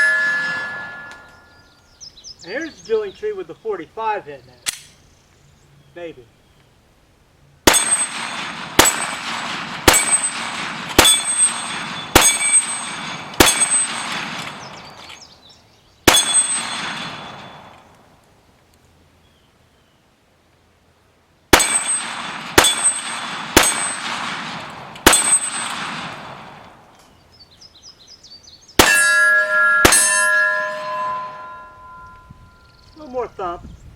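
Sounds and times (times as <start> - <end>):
steel plate ringing clang: 0.0 - 1.8, 7.7 - 9.2, 9.9 - 15.0, 16.1 - 17.9, 21.6 - 24.2, 25.0 - 25.8, 28.8 - 32.8
pistol shots: 7.6 - 15.0, 16.1 - 17.9, 21.5 - 26.9, 28.8 - 29.2, 29.8 - 32.0.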